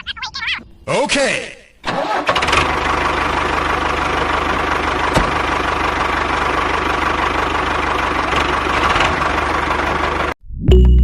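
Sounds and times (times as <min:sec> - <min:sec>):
small engine idling: 0:02.0 - 0:10.4.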